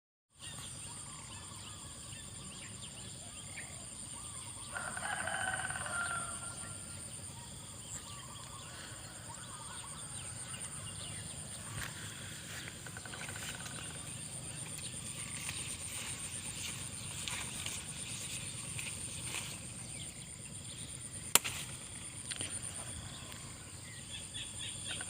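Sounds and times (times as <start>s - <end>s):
rooster crowing: 4.6s - 7.0s.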